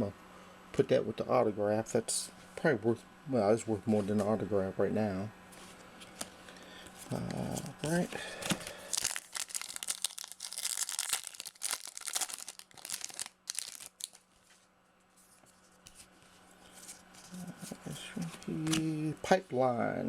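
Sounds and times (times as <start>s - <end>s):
wrapper tearing and crinkling: 7.0s - 14.3s.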